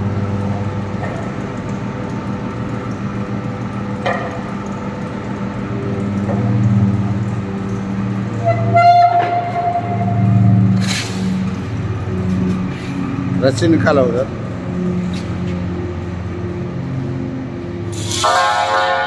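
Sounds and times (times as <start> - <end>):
feed mill machinery humming: 0.0 - 19.0
horn-like tone: 8.4 - 10.7, 18.0 - 19.0.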